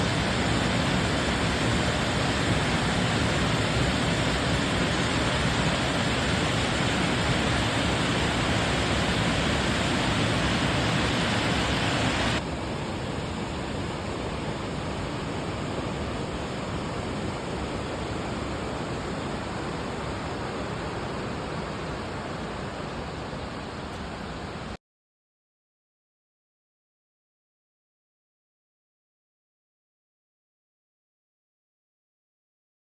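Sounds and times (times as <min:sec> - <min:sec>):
waterfall roaring: 0:00.0 - 0:24.8.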